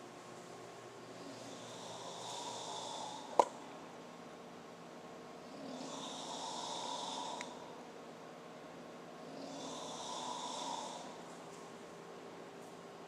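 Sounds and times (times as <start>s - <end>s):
man snoring: 1.2s - 3.3s, 5.5s - 7.6s, 9.2s - 11.2s.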